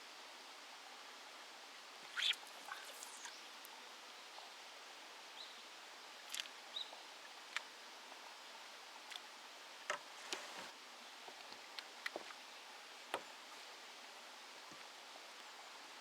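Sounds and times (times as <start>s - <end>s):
faint steady hiss: 0.0s - 16.0s
high chirps: 2.1s - 3.5s.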